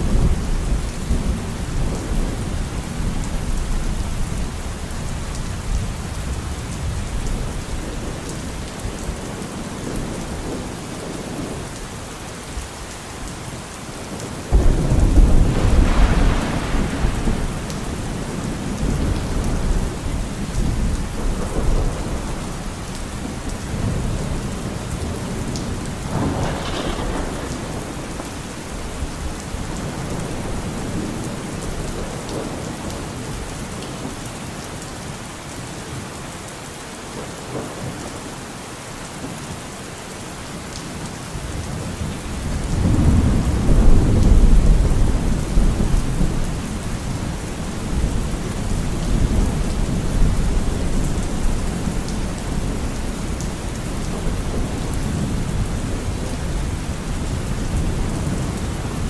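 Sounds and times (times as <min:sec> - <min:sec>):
steady rain falling: 0:00.0 - 0:59.0
thunder rumble: 0:14.5 - 0:32.6, 0:41.6 - 0:59.0.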